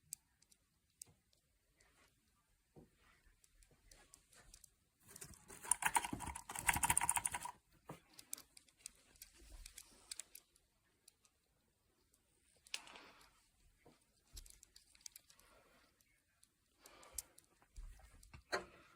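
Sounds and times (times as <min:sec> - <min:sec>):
keyboard typing: 0:05.1 - 0:07.6.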